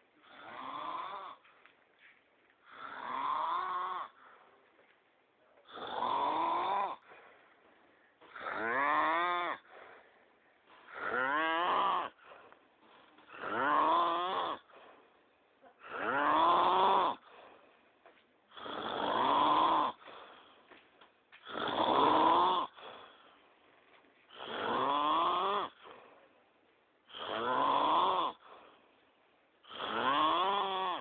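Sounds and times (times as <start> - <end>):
quiet breaths: 0.0 - 31.0
person snoring: 0.2 - 1.5, 2.6 - 4.4, 5.6 - 7.5, 8.2 - 10.1, 10.7 - 15.0, 15.8 - 17.5, 18.5 - 20.5, 21.4 - 23.3, 24.3 - 26.1, 27.1 - 28.6, 29.6 - 31.0.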